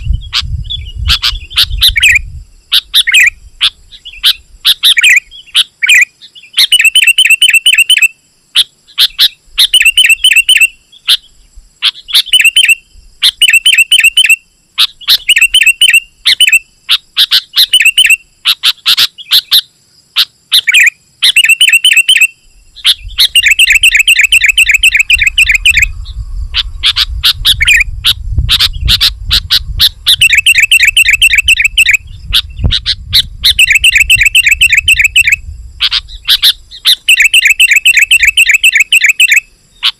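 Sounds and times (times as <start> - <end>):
bird singing chattering notes: 0.0 - 39.9
low rumble: 25.8 - 30.1.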